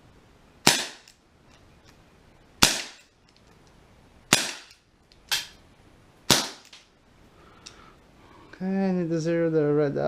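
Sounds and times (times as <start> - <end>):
air pistol shots: 0.6 - 1.2, 2.6 - 3.1, 4.3 - 5.6, 6.3 - 6.8.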